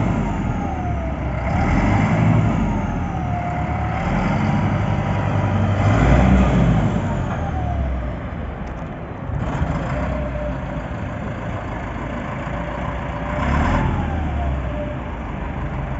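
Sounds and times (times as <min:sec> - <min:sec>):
bulldozer diesel engine running: 0:00.0 - 0:15.9.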